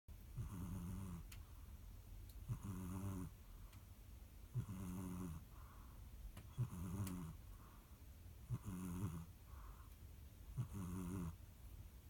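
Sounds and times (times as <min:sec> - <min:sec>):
cat snoring: 0:00.4 - 0:01.3, 0:02.5 - 0:03.4, 0:04.5 - 0:05.7, 0:06.5 - 0:07.4, 0:08.5 - 0:09.9, 0:10.6 - 0:11.4
cat breathing quietly: 0:05.4 - 0:06.1, 0:09.4 - 0:10.0.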